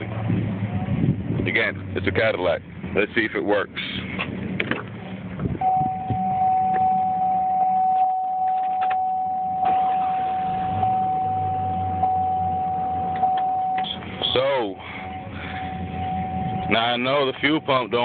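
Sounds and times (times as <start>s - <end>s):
steady high-pitched tone: 5.6s - 18.0s
engine cranking and firing: 8.5s - 12.1s.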